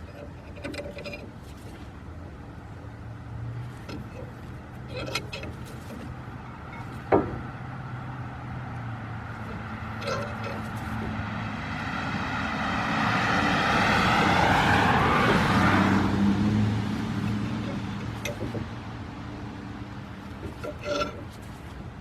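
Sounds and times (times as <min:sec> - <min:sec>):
vehicle passing by: 0:07.6 - 0:20.2.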